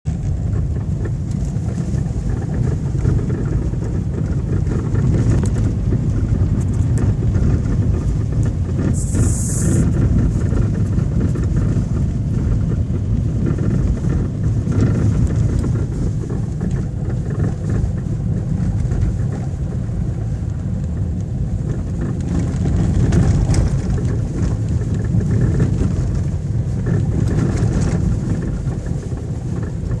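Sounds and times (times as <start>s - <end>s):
road and suspension rumble: 0.0s - 30.0s
suspension knocking: 0.1s - 30.0s
brief hiss: 9.0s - 9.8s.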